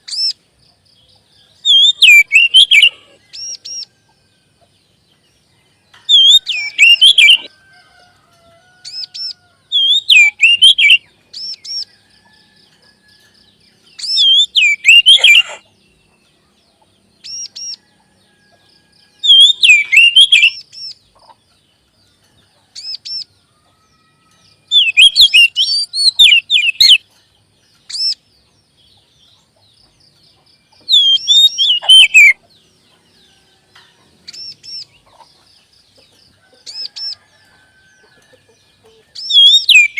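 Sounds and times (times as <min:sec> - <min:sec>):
bird chattering song: 0:00.0 - 0:04.0, 0:04.6 - 0:07.5, 0:08.9 - 0:12.1, 0:13.1 - 0:18.0, 0:19.2 - 0:23.5, 0:24.4 - 0:39.9.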